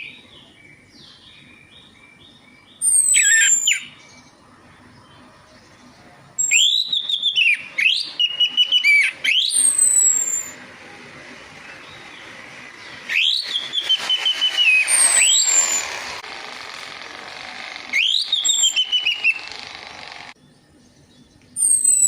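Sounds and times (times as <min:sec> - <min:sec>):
thrush whistled song: 0:00.0 - 0:04.2, 0:06.4 - 0:10.7, 0:11.7 - 0:16.2, 0:17.8 - 0:20.3, 0:21.5 - 0:22.0.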